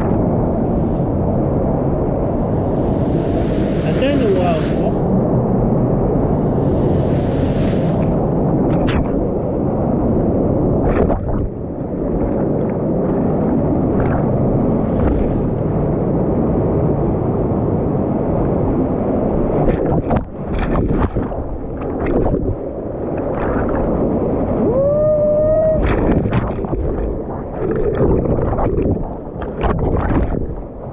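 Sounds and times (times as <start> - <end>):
rushing gurgling water: 0.0 - 30.9
water splashes: 0.6 - 9.0.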